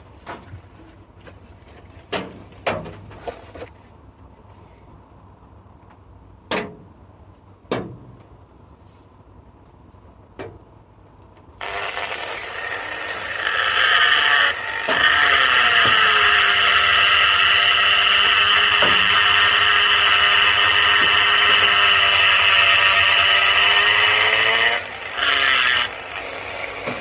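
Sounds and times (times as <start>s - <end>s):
power tool whining: 11.6s - 27.0s.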